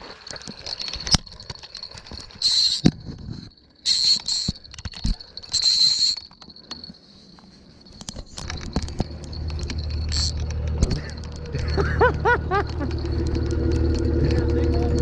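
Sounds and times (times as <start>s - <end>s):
fishing reel drag buzzing: 9.2s - 12.0s.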